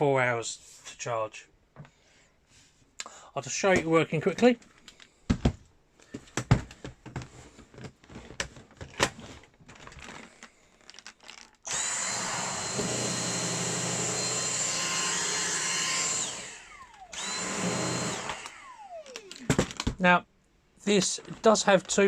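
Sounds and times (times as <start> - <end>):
vacuum cleaner motor whine: 11.7 - 19.6.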